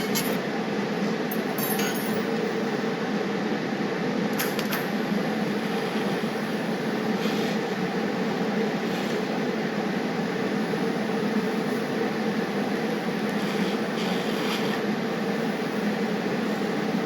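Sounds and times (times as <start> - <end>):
torch flame hissing: 4.8 - 17.0.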